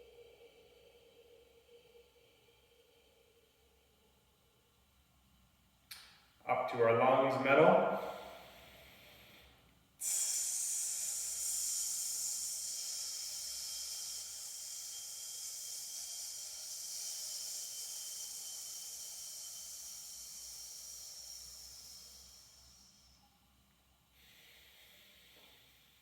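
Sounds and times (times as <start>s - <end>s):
man exhaling a hiss: 7.8s - 23.3s, 24.1s - 26.0s.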